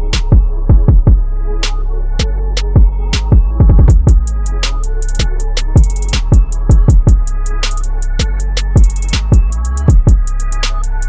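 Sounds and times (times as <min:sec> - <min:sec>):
electronic beat with deep bass: 0:00.0 - 0:11.0
kick drums: 0:00.2 - 0:01.3, 0:02.2 - 0:04.4, 0:05.8 - 0:07.3, 0:08.2 - 0:10.3
fast hi-hat ticks: 0:04.1 - 0:11.0.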